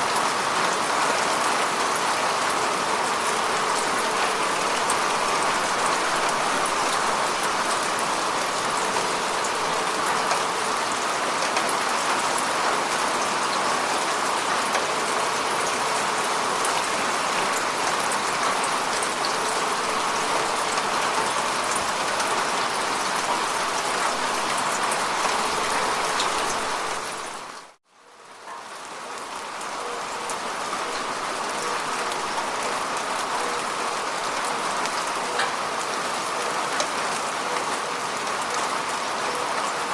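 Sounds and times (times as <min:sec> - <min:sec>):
rain falling on lake water: 0:00.0 - 0:39.9.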